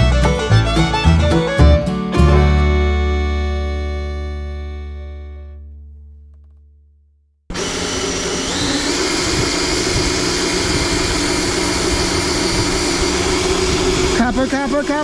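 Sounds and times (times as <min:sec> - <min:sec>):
guitar note: 0:00.0 - 0:06.5.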